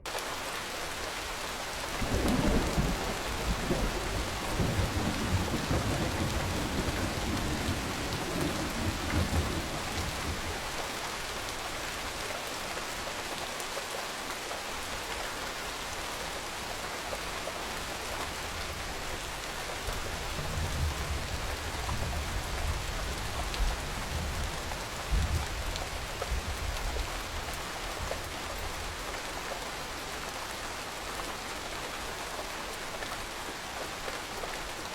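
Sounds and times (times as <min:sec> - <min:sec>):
steady rain: 0:00.0 - 0:34.9
low thunder rumbling: 0:02.0 - 0:10.7.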